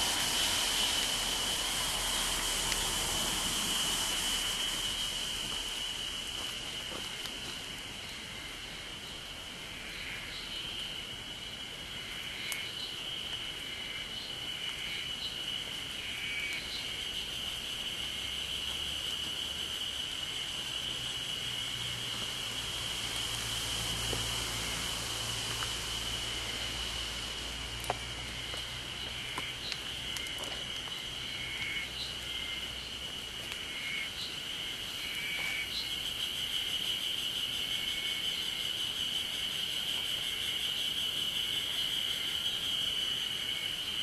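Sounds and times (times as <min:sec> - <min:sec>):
drizzle hiss: 0:00.0 - 0:08.7, 0:16.8 - 0:33.7
high insect trill: 0:00.0 - 0:44.0
short insect chirps: 0:00.0 - 0:44.0.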